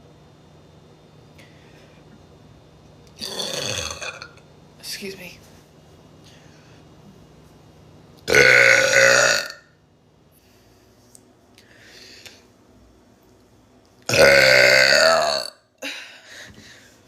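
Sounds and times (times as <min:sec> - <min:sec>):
person belching loudly: 0:03.2 - 0:04.4, 0:08.3 - 0:09.7, 0:14.1 - 0:15.6.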